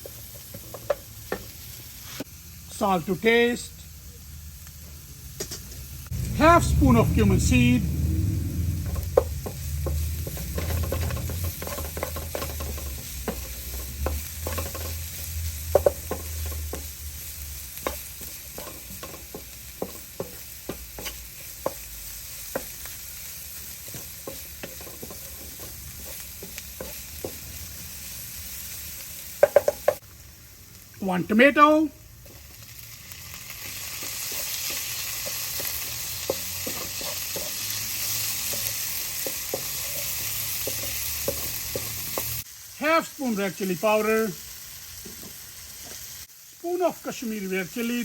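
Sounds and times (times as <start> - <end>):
spoon scraping and tapping pan: 0.0 - 1.5, 8.9 - 16.9, 17.8 - 21.9, 23.9 - 27.4, 29.4 - 30.0, 34.0 - 42.4
food sizzling in oil: 0.0 - 48.0
low hum: 6.0 - 11.6.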